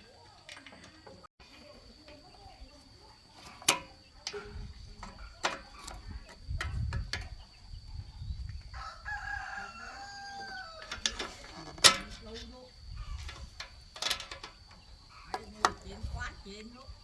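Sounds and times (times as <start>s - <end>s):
rooster crowing: 8.6s - 11.4s.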